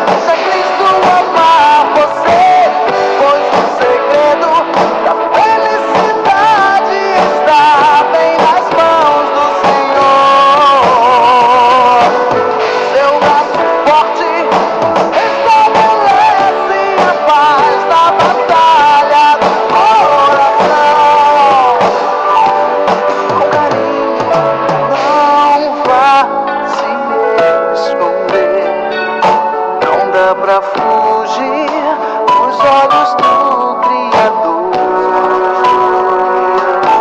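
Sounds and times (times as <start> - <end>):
drums: 0.0 - 37.0
guitar: 0.0 - 37.0
person singing with vibrato: 0.0 - 37.0.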